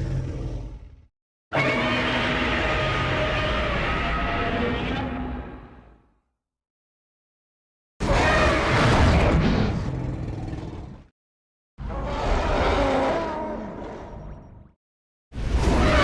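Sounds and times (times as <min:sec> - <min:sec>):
monster roar: 0:00.0 - 0:05.7, 0:11.8 - 0:14.1.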